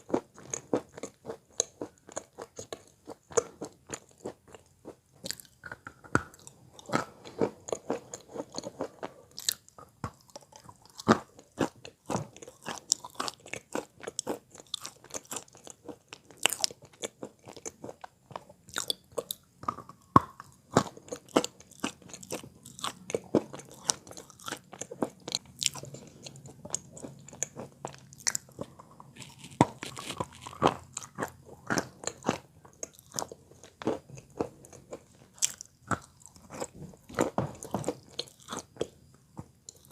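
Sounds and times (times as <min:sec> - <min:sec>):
chalk being chewed: 0:18.7 - 0:38.9.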